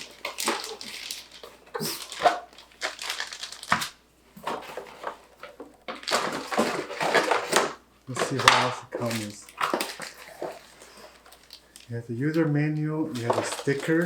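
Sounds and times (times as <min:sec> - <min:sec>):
packaging rustling and crinkling: 0:00.0 - 0:14.0.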